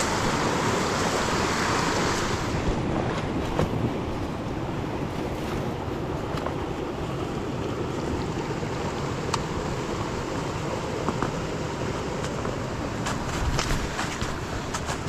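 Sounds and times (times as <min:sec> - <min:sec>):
wind noise on microphone: 0:00.0 - 0:06.8, 0:12.9 - 0:15.0.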